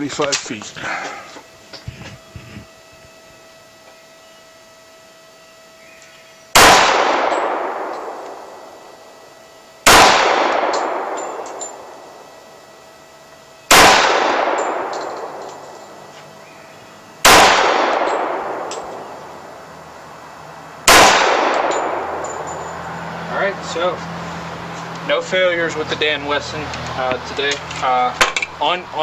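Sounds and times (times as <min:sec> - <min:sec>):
pistol shots with echo: 0:06.5 - 0:08.8, 0:09.8 - 0:12.2, 0:13.7 - 0:15.7, 0:17.2 - 0:19.3, 0:20.8 - 0:22.6.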